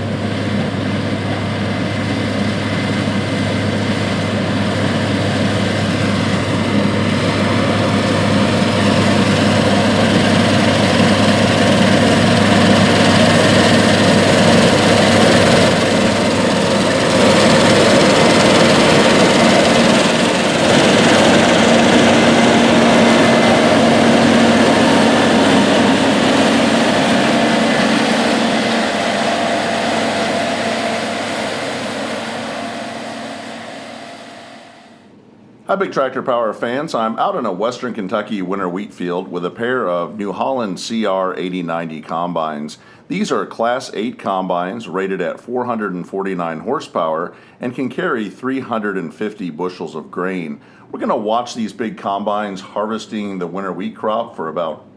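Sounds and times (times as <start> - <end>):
combine harvester droning: 0.0 - 35.4.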